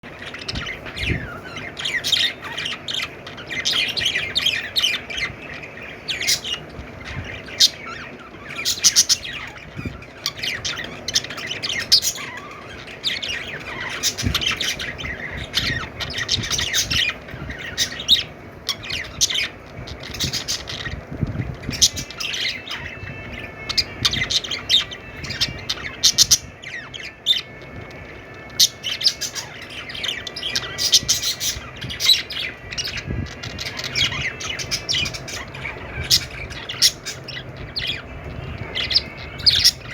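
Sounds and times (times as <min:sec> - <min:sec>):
budgerigars chattering: 0:00.0 - 0:27.9, 0:28.5 - 0:39.9.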